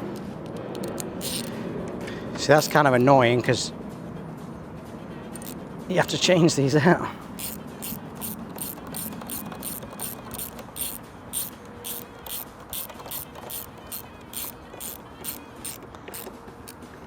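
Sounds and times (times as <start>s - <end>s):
ratchet wrench clicking: 0.0s - 1.6s, 5.3s - 5.6s, 7.3s - 16.9s.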